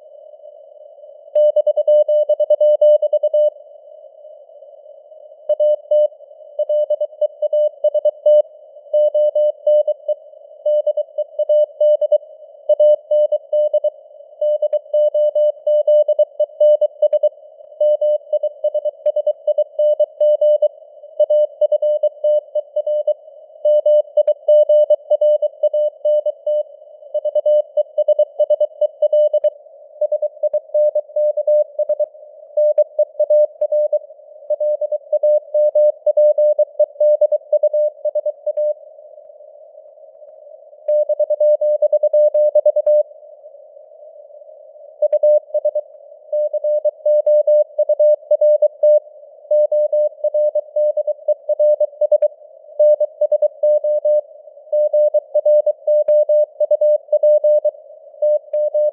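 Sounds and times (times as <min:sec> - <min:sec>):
morse code beeps: 0:58.3 - 0:58.9.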